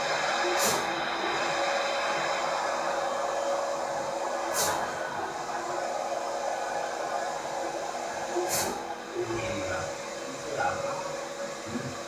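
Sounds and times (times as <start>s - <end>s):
printer whirring and humming: 0.0s - 12.0s
brief hiss: 8.5s - 8.8s.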